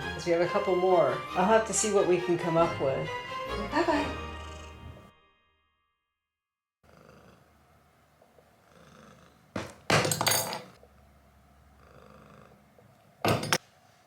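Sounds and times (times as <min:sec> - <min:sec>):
cat purring: 0:04.1 - 0:05.0, 0:06.8 - 0:09.6, 0:11.5 - 0:13.2.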